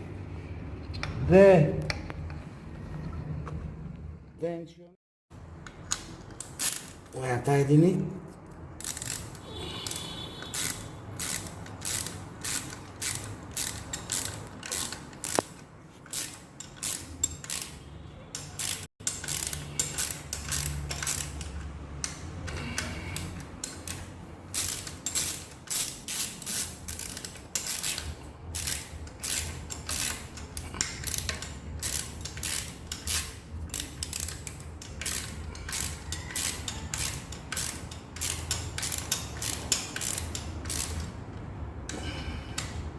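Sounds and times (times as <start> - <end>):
ratchet wrench clicking: 5.6 - 7.2, 8.8 - 41.2.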